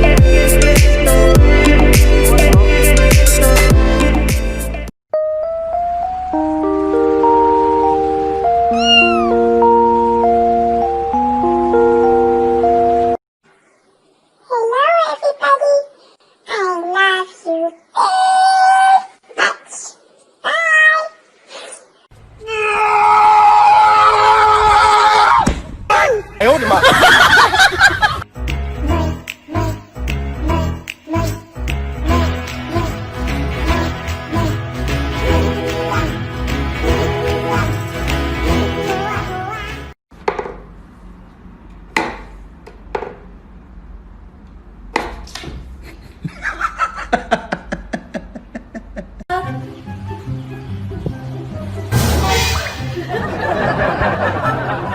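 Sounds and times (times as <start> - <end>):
high-pitched squeaks: 8.7 - 9.4
kittens meowing: 8.7 - 9.4
faint hiss: 13.4 - 14.9.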